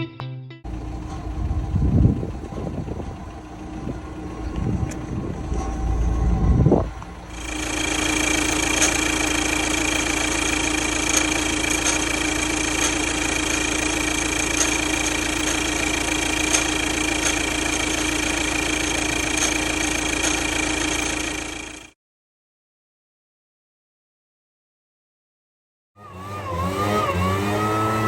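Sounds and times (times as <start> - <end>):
diesel engine idling: 0.7 - 21.9
high turbo whine: 0.7 - 22.0, 26.0 - 28.0.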